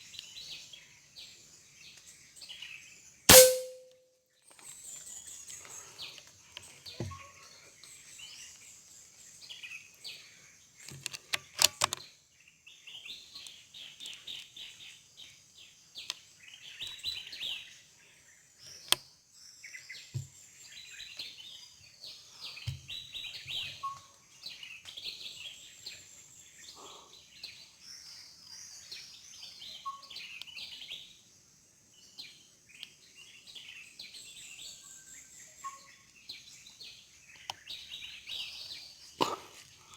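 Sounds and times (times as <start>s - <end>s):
sharp crack: 3.3s - 3.9s.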